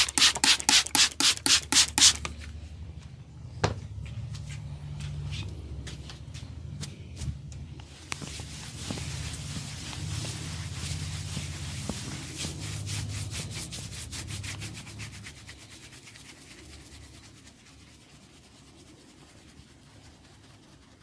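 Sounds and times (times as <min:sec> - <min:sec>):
hands rubbing scalp and hair: 0:00.0 - 0:02.4, 0:04.2 - 0:21.0
faint rustle: 0:04.3 - 0:14.0.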